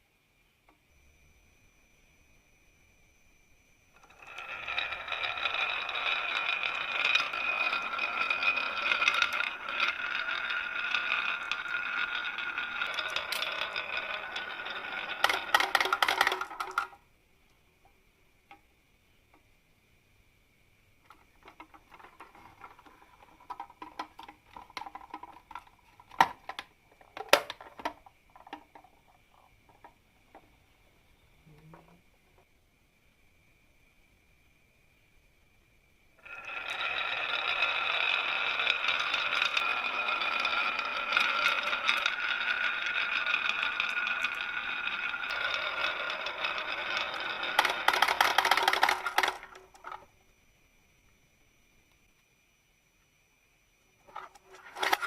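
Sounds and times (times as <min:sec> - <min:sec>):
marbles clicking against track: 0:03.9 - 0:17.0, 0:21.1 - 0:30.4, 0:36.2 - 0:50.1, 0:54.0 - 0:55.0
marbles rattling down a run: 0:04.0 - 0:17.0, 0:21.1 - 0:30.4, 0:36.2 - 0:50.1, 0:54.0 - 0:55.0.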